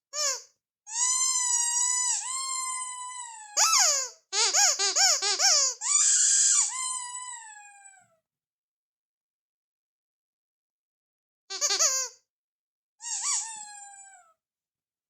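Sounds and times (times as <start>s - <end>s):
rubber squeaky toy squeaking: 0.1s - 8.2s, 11.5s - 12.2s, 13.0s - 14.4s.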